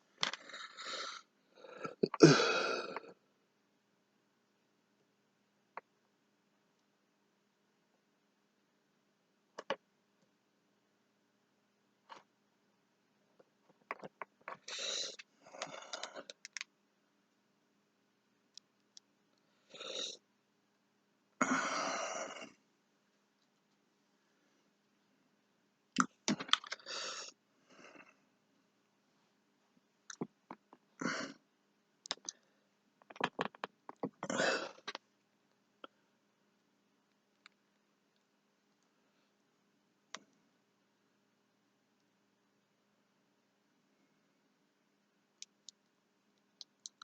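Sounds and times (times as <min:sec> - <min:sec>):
plastic figures clicking: 0:32.1 - 0:32.4
plastic clicks and knocks: 0:33.0 - 0:34.3.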